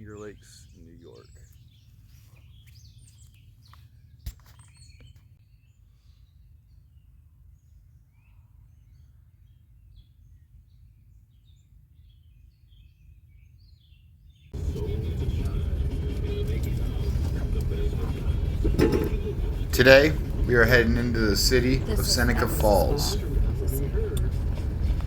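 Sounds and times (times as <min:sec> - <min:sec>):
small birds chirping: 0:00.0 - 0:25.0
steady low rumble: 0:14.6 - 0:25.0.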